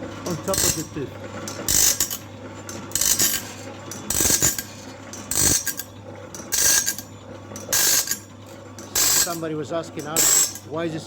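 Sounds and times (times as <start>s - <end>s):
grinding wheel grinding bursts: 0.4s - 5.8s, 8.9s - 10.8s.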